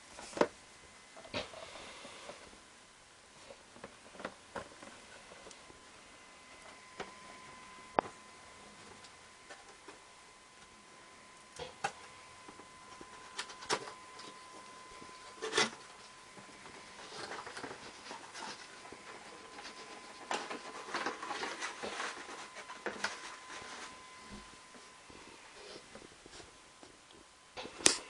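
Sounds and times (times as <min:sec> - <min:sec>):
rustles and scrapes: 0:11.6 - 0:27.0.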